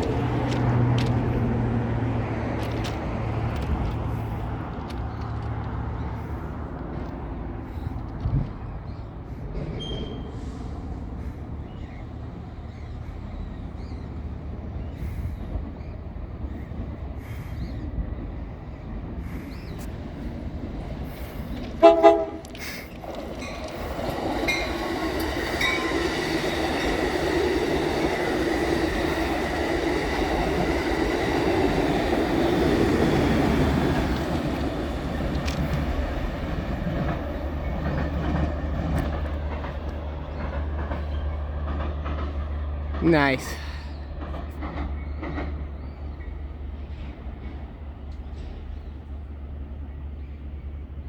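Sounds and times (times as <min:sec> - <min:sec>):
train rolling on rails: 0:00.0 - 0:51.0
train horn blasts: 0:21.8 - 0:22.6.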